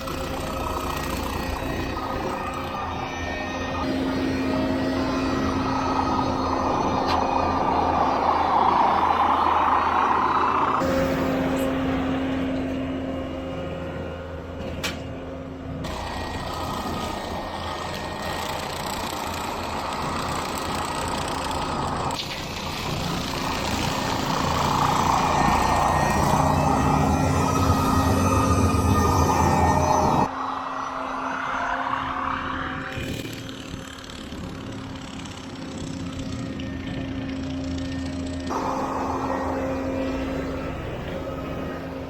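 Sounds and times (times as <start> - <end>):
loader engine running: 0.0 - 30.4, 33.0 - 42.0
hydraulic brush cutter mowing: 15.8 - 30.3.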